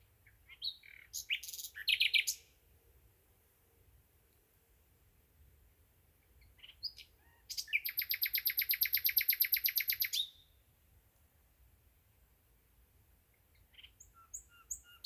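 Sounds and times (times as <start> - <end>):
nightingale singing: 0.0 - 2.6, 6.2 - 10.7, 13.3 - 15.0.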